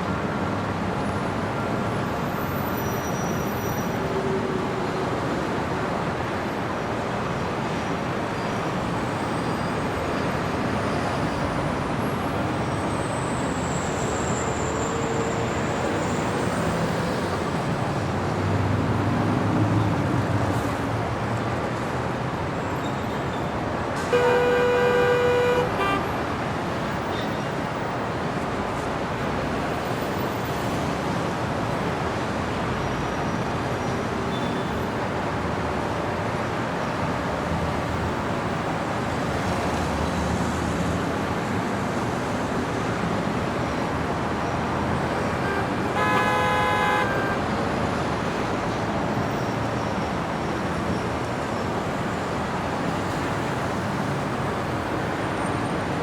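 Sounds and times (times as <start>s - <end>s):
cars passing: 3.8s - 56.0s
car horn honking: 24.1s - 26.1s, 45.2s - 47.5s.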